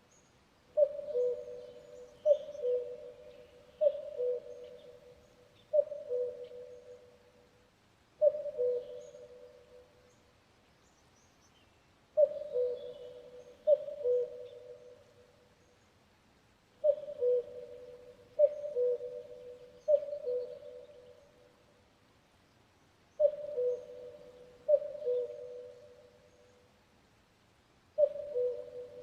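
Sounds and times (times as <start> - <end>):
cuckoo calling: 0.8 - 7.1, 8.2 - 9.6, 12.2 - 15.0, 16.8 - 21.3, 23.2 - 26.5, 28.0 - 29.0.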